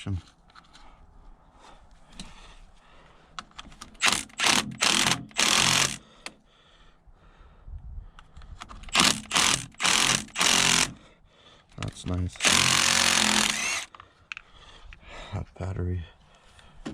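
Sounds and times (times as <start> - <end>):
power tool rattling bursts: 4.0 - 6.0, 8.8 - 11.0, 12.4 - 14.0.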